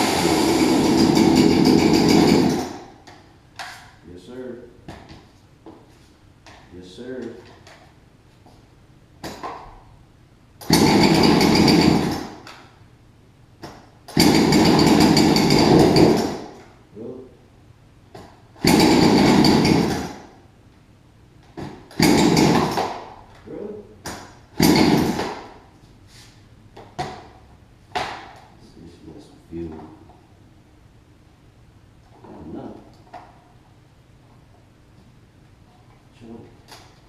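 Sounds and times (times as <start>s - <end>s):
chainsaw recoil starter pulls: 0.0s - 2.8s, 10.6s - 12.4s, 14.1s - 16.4s.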